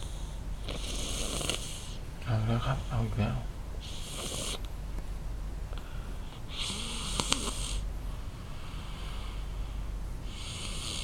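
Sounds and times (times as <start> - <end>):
loud rasping snoring: 0.0 - 2.0, 3.8 - 4.6, 6.5 - 7.8, 10.3 - 11.0.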